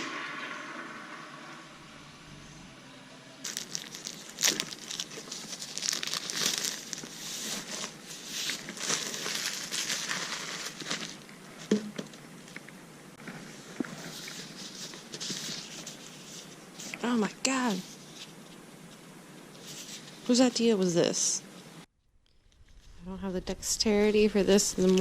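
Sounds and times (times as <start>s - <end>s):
wrapping paper crinkling: 3.4s - 11.7s, 13.9s - 17.0s.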